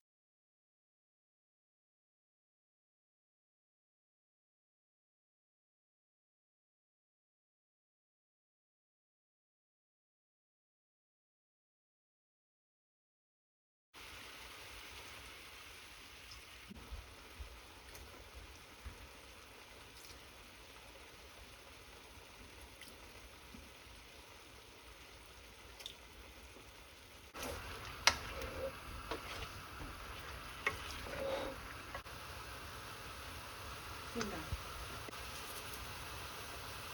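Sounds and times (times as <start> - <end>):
food sizzling in a pot: 14.0 - 36.9.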